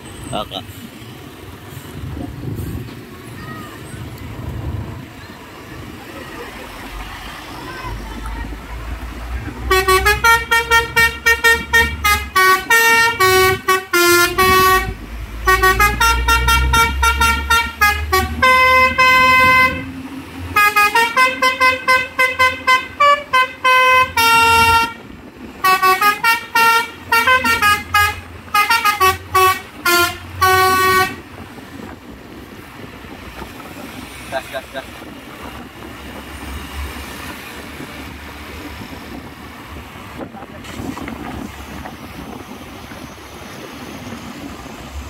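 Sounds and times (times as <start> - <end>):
truck air horn melody: 9.6 - 19.9, 20.5 - 31.2.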